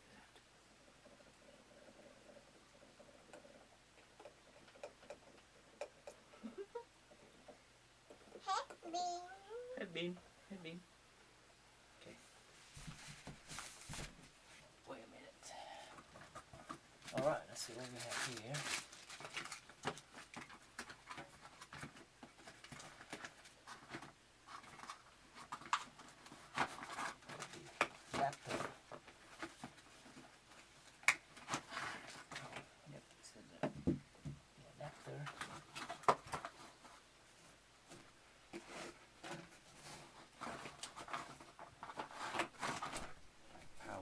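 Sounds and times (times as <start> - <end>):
packaging rustling: 17.7 - 32.7.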